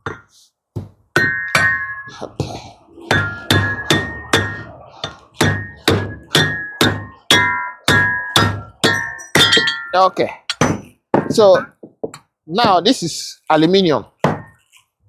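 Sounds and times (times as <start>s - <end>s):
hammer striking metal: 1.2s - 11.8s.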